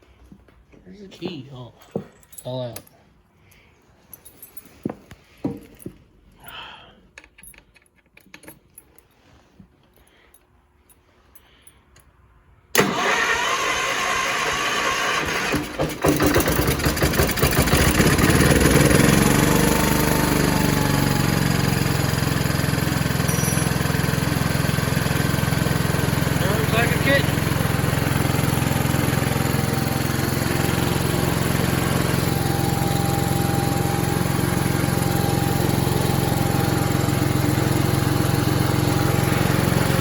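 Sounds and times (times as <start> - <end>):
engine cranking on starter: 12.7 - 40.0
engine running steadily: 14.6 - 40.0.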